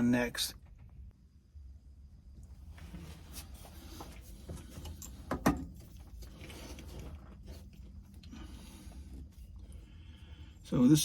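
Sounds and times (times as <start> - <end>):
rustling handling noises: 2.7 - 10.0.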